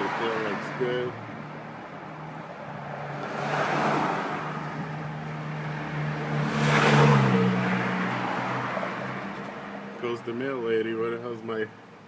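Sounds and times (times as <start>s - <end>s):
vehicle driving past fast: 2.8s - 10.0s.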